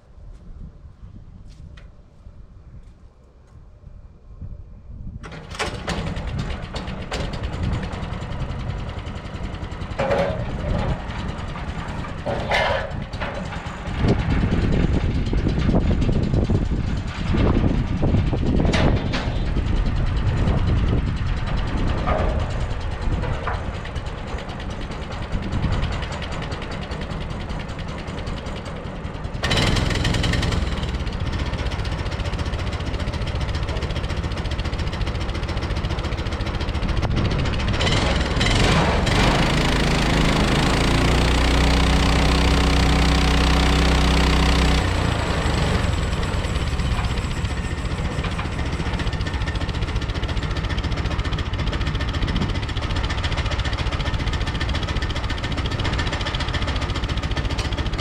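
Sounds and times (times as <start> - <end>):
sawmill engine running: 5.2 - 58.0.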